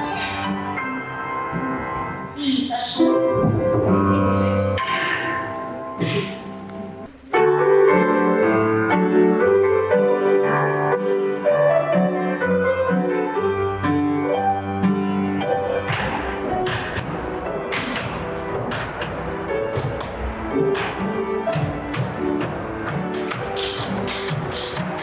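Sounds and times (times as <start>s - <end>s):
piano music: 0.0s - 25.0s
feet tapping on floor: 14.3s - 25.0s.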